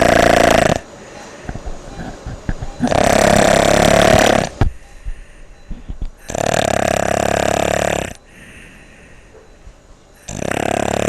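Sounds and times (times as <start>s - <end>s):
person snoring: 0.0s - 0.9s, 2.8s - 4.6s, 6.2s - 8.6s, 10.2s - 11.0s
quiet breathing: 0.0s - 11.0s.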